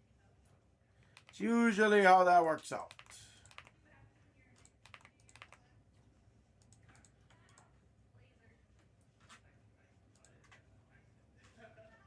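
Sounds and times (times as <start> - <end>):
faint clicks and taps: 4.5 - 5.6.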